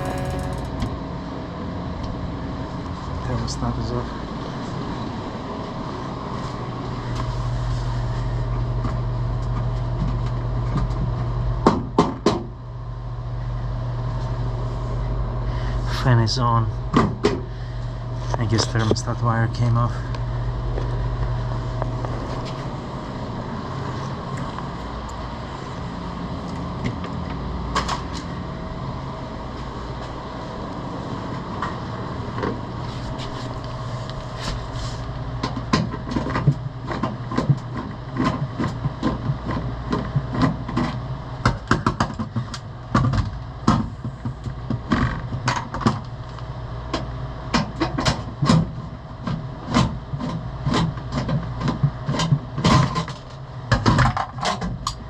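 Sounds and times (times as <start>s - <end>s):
refrigerator fan humming: 0.0s - 1.0s, 12.5s - 27.7s, 28.3s - 55.0s.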